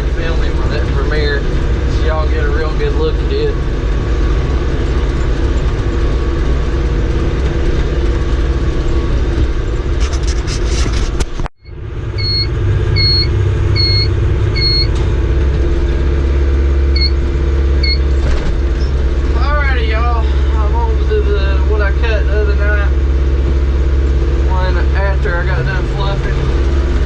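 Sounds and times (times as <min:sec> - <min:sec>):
clatter: 0:00.0 - 0:11.5, 0:17.9 - 0:19.4
tractor engine running: 0:00.0 - 0:27.0
electronic beeper: 0:11.6 - 0:14.9, 0:17.0 - 0:17.2, 0:17.8 - 0:18.1.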